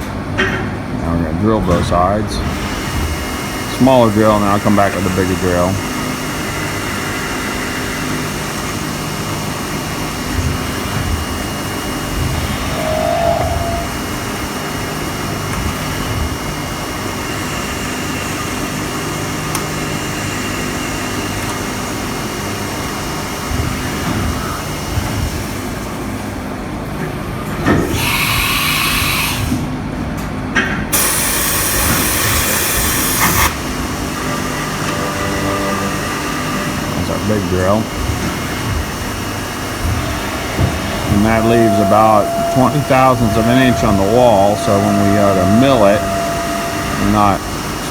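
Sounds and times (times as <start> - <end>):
machine hum: 1.2 - 17.0, 33.5 - 47.9
mill drilling: 1.8 - 18.7, 31.0 - 47.9.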